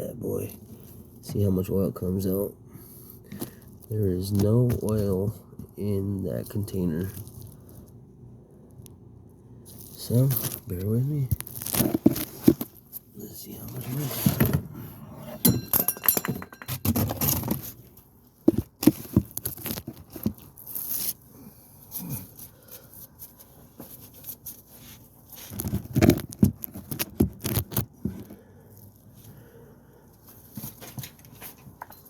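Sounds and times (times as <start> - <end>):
hand tools clicking and knocking: 15.4 - 17.4.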